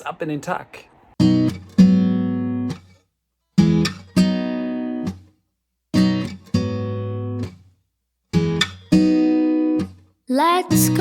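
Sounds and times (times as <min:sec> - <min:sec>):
acoustic guitar strumming: 0:01.2 - 0:02.9, 0:03.6 - 0:05.3, 0:06.0 - 0:07.6, 0:08.3 - 0:11.0.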